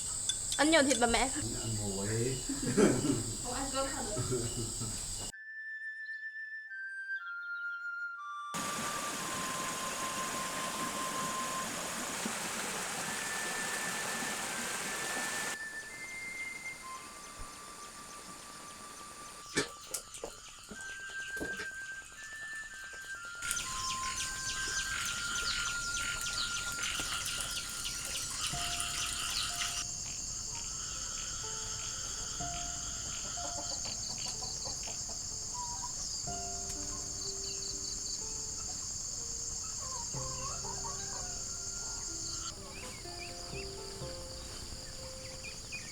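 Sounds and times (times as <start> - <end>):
bird chirps: 0.0 - 5.3, 23.4 - 45.9
insects chorus: 0.0 - 5.3, 8.6 - 20.9, 23.4 - 45.9
rushing water: 8.6 - 19.5, 23.4 - 34.1.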